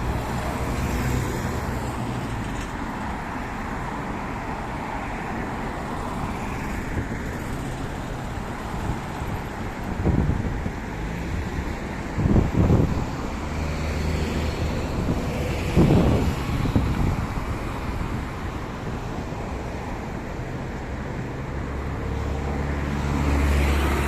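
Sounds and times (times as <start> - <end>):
passing motor vehicles hum: 0.0 - 24.0
wind buffeting microphone: 6.0 - 21.3.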